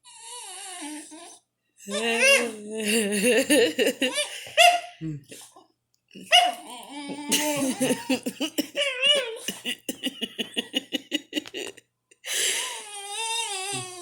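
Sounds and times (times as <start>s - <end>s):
dog whining: 0.0s - 2.7s, 12.6s - 14.0s
person laughing hard: 2.8s - 4.9s, 7.1s - 12.5s.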